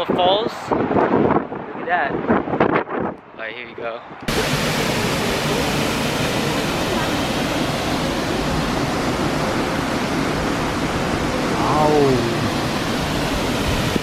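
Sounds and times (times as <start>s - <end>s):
waterfall rushing: 4.3s - 14.0s.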